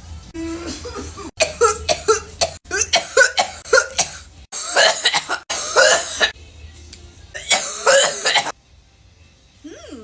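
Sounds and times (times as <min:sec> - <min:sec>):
person coughing hard: 0:00.7 - 0:06.3, 0:07.4 - 0:08.5.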